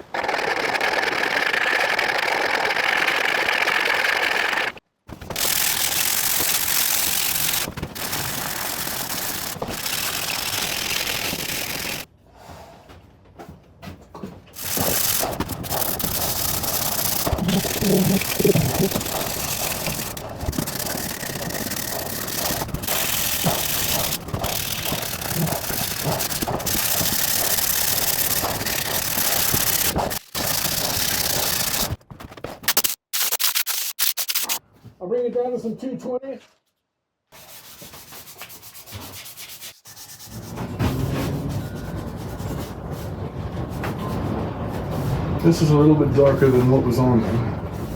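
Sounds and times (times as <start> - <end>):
sandpaper sanding wood: 5.3 - 12.1, 14.6 - 32.0, 32.7 - 34.6, 37.4 - 40.6.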